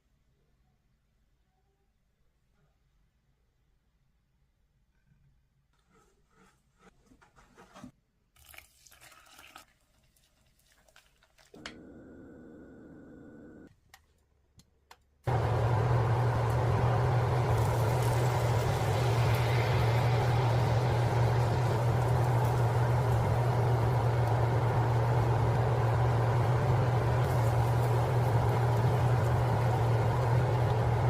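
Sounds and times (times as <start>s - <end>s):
machine humming and whooshing: 11.8s - 13.7s, 15.3s - 31.0s.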